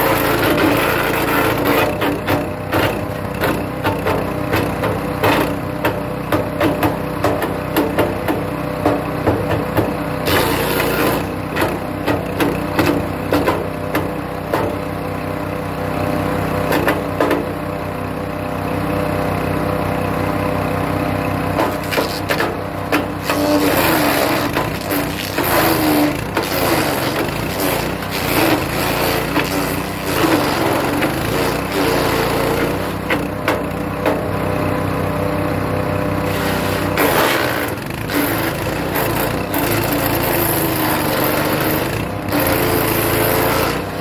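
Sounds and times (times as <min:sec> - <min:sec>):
wood chipper engine running: 0:00.0 - 0:44.0
wood cracking and splintering: 0:21.6 - 0:22.4, 0:23.2 - 0:32.0.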